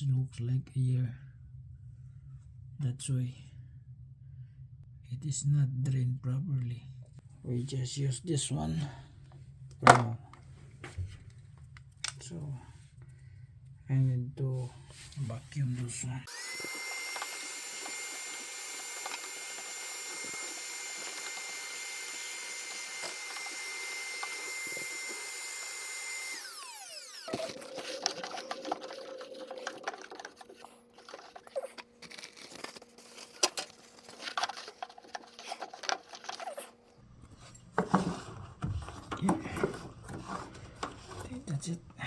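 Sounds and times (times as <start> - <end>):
handheld vacuum cleaner whining: 16.3 - 41.5.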